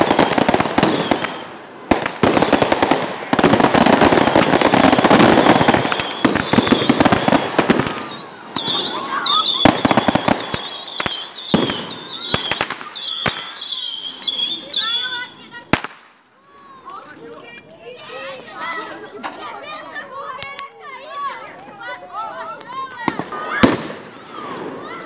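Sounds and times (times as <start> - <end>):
firecrackers crackling: 0.0 - 25.0
high wavering whistles: 5.2 - 15.5.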